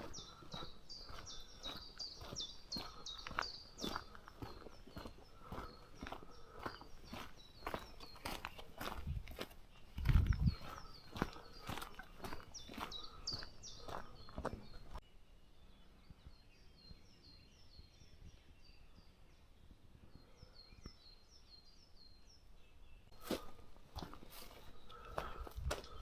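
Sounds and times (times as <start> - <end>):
footsteps on forest path: 0.0 - 15.0, 23.1 - 26.0
songbird chirping: 0.0 - 26.0.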